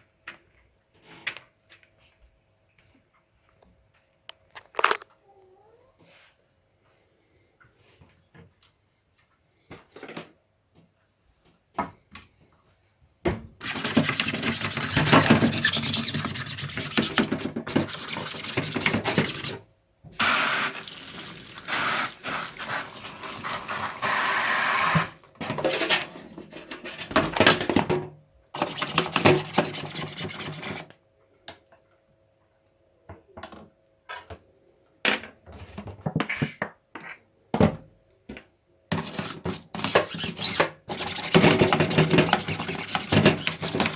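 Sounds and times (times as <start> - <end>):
tap water running into sink: 20.1 - 25.1.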